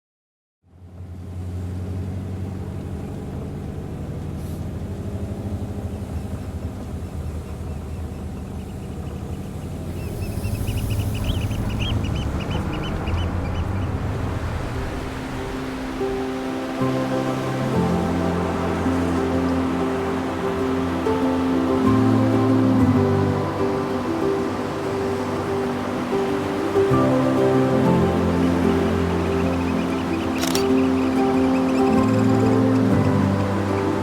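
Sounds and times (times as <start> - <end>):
steady low rumble: 3.2 - 16.2
high bird-like chirps: 7.5 - 14.0, 28.1 - 34.0.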